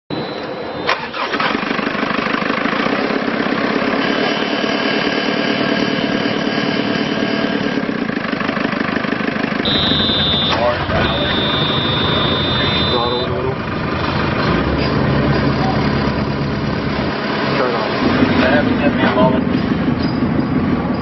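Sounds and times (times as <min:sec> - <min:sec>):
diesel engine idling: 0:00.8 - 0:20.9
high warning tone: 0:09.6 - 0:13.6.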